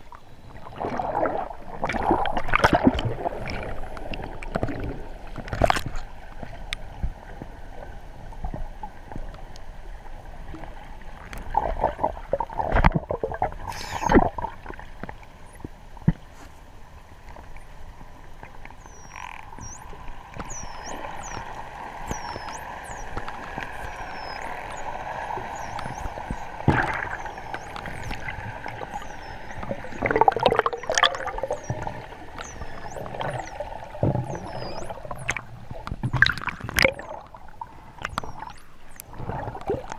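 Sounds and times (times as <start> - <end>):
rushes of water and bubbles: 0.0 - 39.9
underwater water noise: 0.0 - 39.9
dolphin whistles: 13.7 - 14.2, 18.8 - 33.6, 34.2 - 35.4, 38.1 - 38.6.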